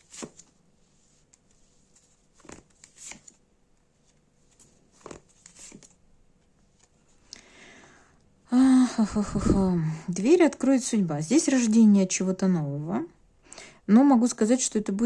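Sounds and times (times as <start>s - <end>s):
cards rustling: 0.0s - 0.6s, 1.4s - 3.4s, 4.0s - 6.0s.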